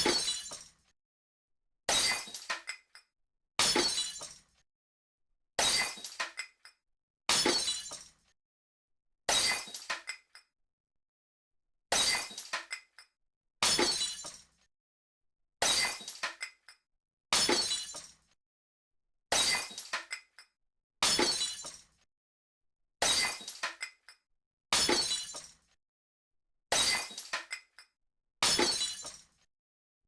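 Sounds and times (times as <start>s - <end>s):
glass smashing: 0.0s - 0.7s, 1.9s - 2.5s, 3.6s - 4.4s, 5.6s - 6.2s, 7.3s - 8.1s, 9.3s - 9.9s, 11.9s - 12.6s, 13.6s - 14.4s, 15.6s - 16.3s, 17.4s - 18.1s, 19.3s - 20.0s, 21.0s - 21.8s, 23.0s - 23.8s, 24.8s - 25.6s, 26.7s - 27.6s, 28.4s - 29.3s.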